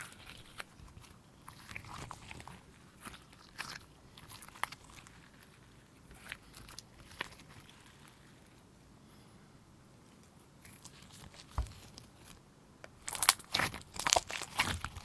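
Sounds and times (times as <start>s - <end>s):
slime squished by hand: 13.0s - 15.0s.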